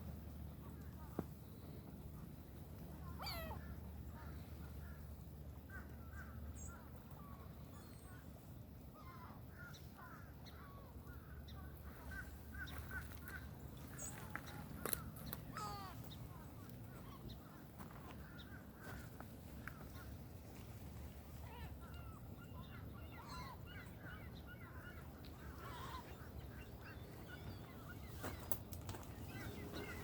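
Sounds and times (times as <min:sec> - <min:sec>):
birds calling: 0:09.0 - 0:20.3, 0:21.0 - 0:30.0.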